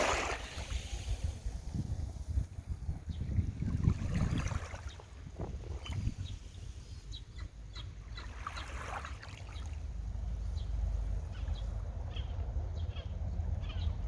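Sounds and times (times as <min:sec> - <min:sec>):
distant town: 0:00.0 - 0:14.0
low rumble of water: 0:00.0 - 0:14.0.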